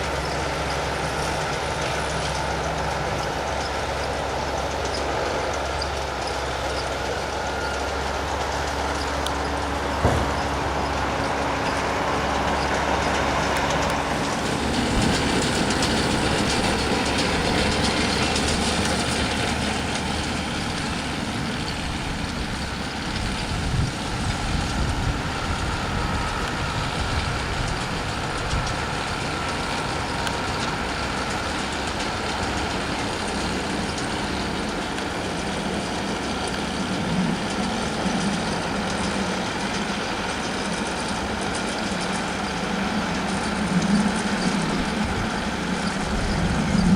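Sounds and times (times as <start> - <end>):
broad noise: 0.0 - 46.9
engine running: 0.0 - 46.9.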